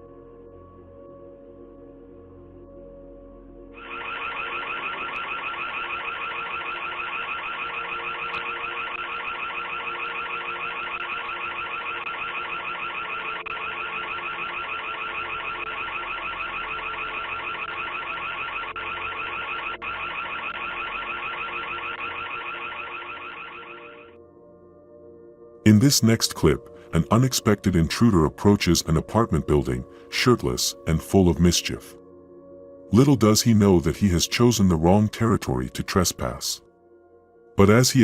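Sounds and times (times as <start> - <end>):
electronic alarm siren warbling: 3.8 - 24.2.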